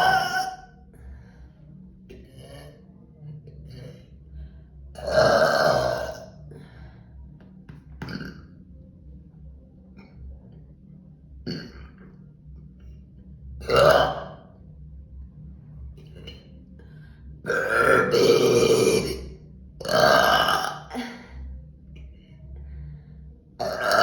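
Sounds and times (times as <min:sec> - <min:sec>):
woman burping loudly: 0:00.0 - 0:00.6, 0:05.0 - 0:06.3, 0:13.6 - 0:14.4, 0:17.5 - 0:21.3, 0:23.6 - 0:24.0.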